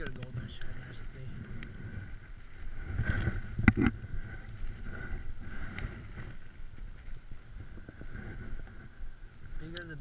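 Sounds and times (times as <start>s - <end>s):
wind rumbling on microphone: 0.0s - 10.0s.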